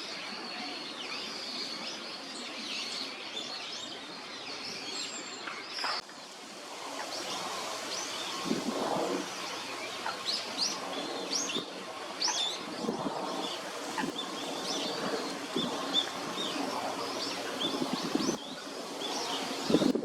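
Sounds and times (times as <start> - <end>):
water birds calling: 5.2 - 20.0.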